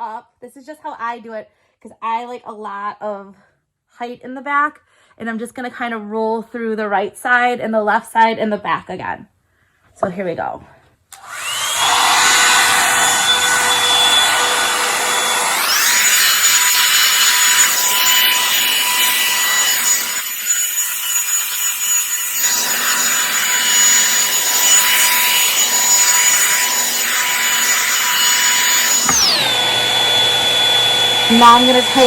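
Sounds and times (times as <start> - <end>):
hot-air brush fan motor whining: 11.2 - 32.0.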